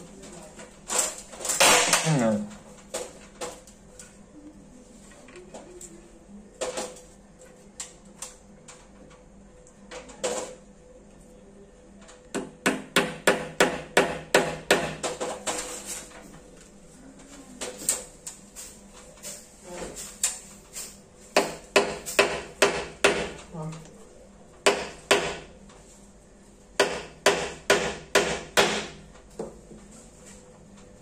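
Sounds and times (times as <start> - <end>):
hammer driving nails into wood: 12.4 - 15.2, 21.4 - 23.4, 24.6 - 25.4, 26.8 - 29.0.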